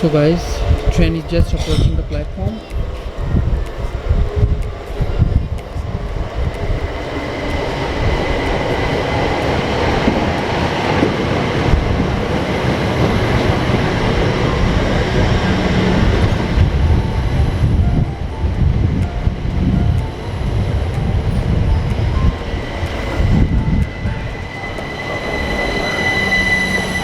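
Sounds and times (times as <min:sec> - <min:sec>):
train wheels rumbling on rails: 0:00.0 - 0:27.0
faint high squeal: 0:24.4 - 0:27.0.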